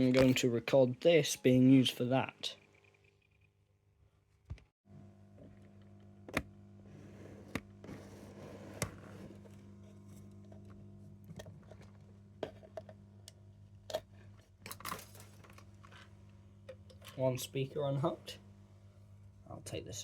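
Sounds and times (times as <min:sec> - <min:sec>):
low electrical hum: 0:04.9 - 0:20.0.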